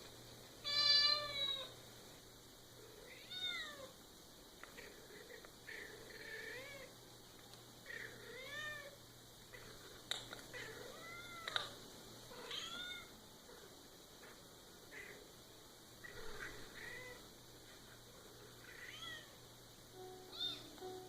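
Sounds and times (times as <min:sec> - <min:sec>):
cat meowing: 0:10.5 - 0:11.6, 0:12.4 - 0:13.1.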